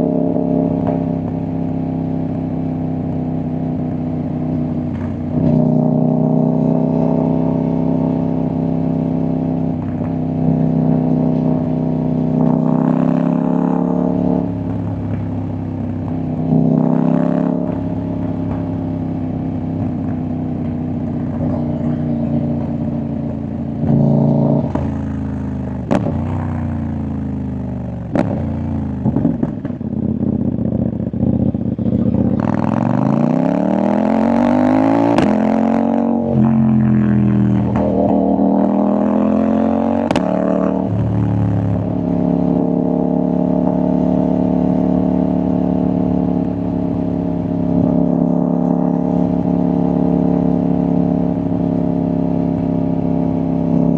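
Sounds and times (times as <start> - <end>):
motorcycle engine revving: 0.0 - 53.9
exhaust pops and crackles: 25.8 - 26.5, 28.1 - 30.0, 35.1 - 35.4, 40.0 - 40.3.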